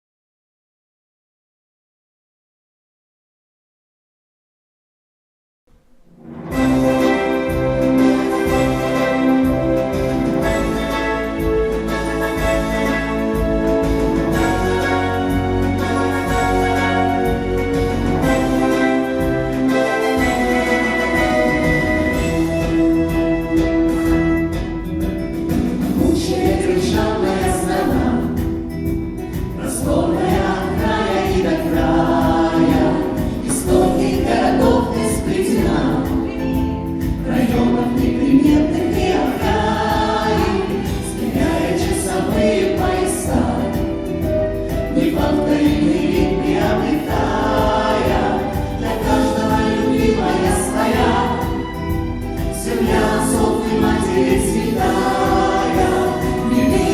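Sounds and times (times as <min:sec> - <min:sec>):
musical accompaniment: 0:05.7 - 0:56.9
choir singing: 0:06.2 - 0:24.7, 0:25.6 - 0:28.8, 0:29.4 - 0:56.9.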